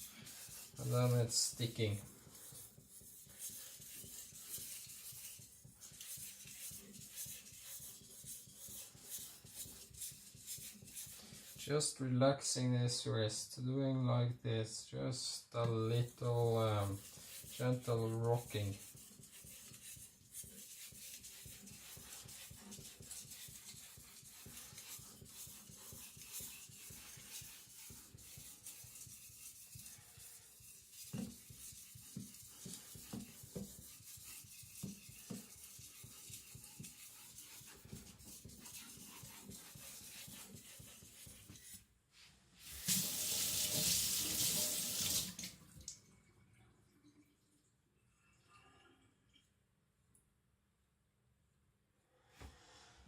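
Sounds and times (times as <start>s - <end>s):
tap water running: 42.6s - 46.2s.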